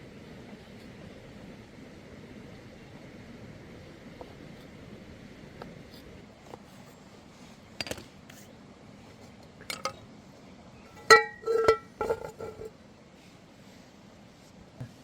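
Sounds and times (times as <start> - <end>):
cooking utensils clinking: 10.9 - 12.7.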